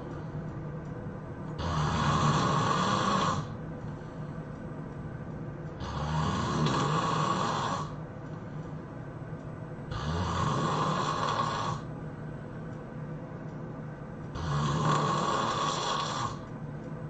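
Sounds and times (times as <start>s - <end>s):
person snoring hard: 1.6s - 3.6s, 5.8s - 8.0s, 9.9s - 11.9s, 14.4s - 16.4s.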